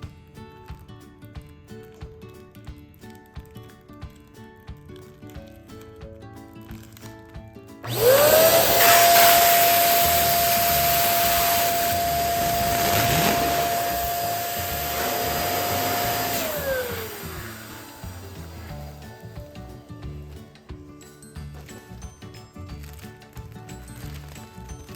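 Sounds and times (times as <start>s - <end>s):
balloon pump motor whine: 7.9s - 19.3s
air rushing: 8.6s - 19.1s.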